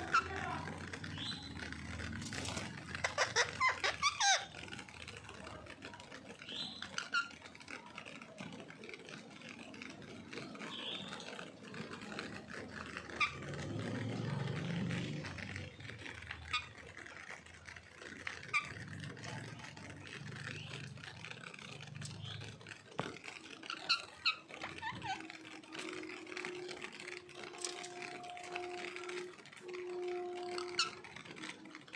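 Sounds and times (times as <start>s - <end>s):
parrot squawking: 0.0s - 1.6s, 2.4s - 4.6s, 13.2s - 13.8s, 18.4s - 19.5s, 23.6s - 26.6s, 30.5s - 31.1s.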